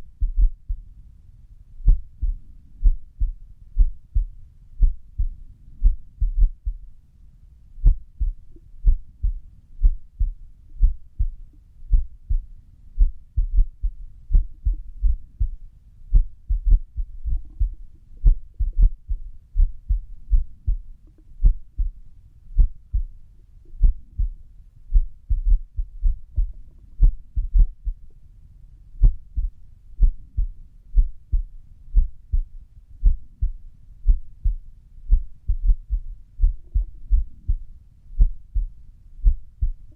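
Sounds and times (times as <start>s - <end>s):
irregular heartbeat thumps: 0.0s - 0.9s, 1.8s - 7.0s, 7.8s - 22.0s, 22.6s - 23.2s, 23.8s - 28.1s, 29.0s - 39.9s.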